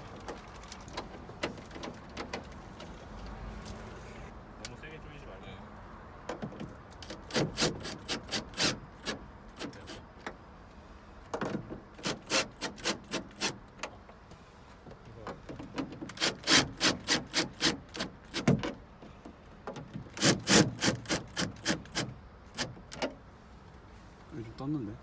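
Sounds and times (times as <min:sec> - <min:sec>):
ratchet wrench strokes: 0:07.0 - 0:10.0, 0:12.0 - 0:13.6, 0:16.1 - 0:18.5, 0:20.1 - 0:22.8.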